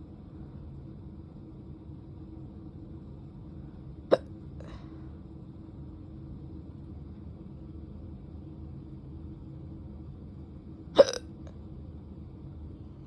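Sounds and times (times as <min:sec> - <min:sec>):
person hiccuping: 0:11.0 - 0:11.2.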